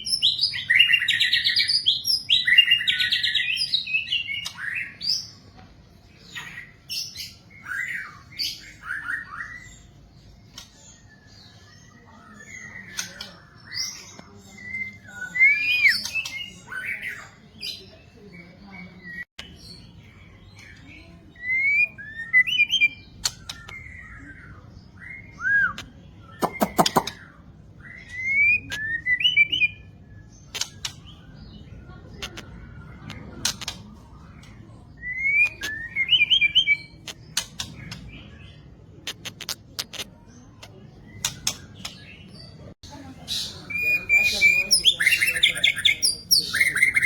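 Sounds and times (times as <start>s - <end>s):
bird whistling song: 10.9s - 17.3s, 21.4s - 31.1s, 34.9s - 38.0s, 43.3s - 47.0s
bird sharp clicking calls: 23.2s - 24.0s, 25.7s - 27.3s, 30.5s - 31.2s, 32.2s - 34.5s, 35.4s - 38.2s, 39.0s - 42.2s.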